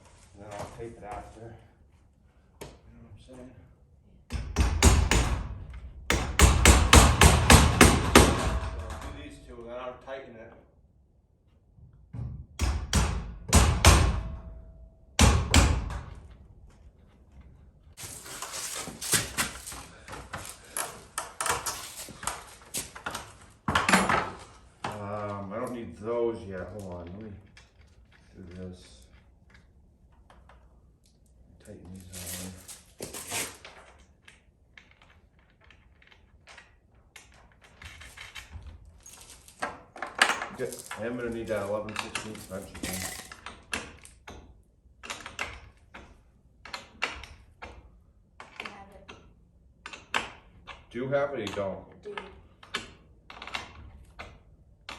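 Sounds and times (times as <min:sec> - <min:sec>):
hammer knocking on wood: 0:06.1 - 0:08.4.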